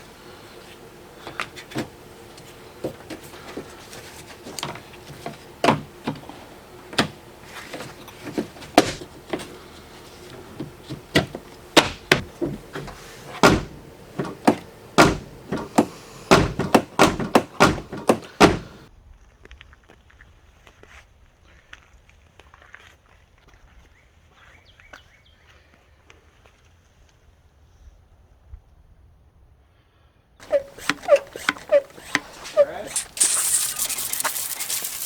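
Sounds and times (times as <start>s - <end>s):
truck door handle clacking: 8.4s - 9.5s, 10.4s - 18.9s, 30.4s - 33.1s.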